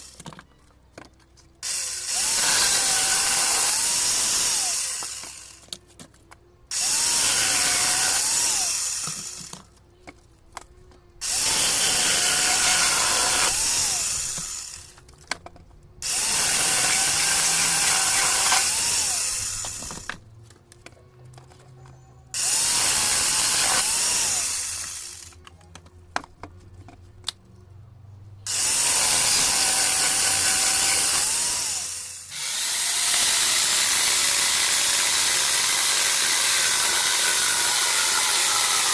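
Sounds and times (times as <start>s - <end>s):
angle grinder whining: 1.6s - 5.7s, 6.7s - 9.6s, 11.2s - 15.0s, 16.0s - 20.2s, 22.4s - 25.4s, 28.5s - 38.9s.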